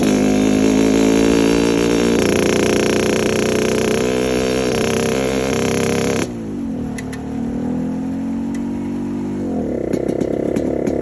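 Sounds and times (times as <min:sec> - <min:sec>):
motorcycle engine growling: 0:00.0 - 0:11.0.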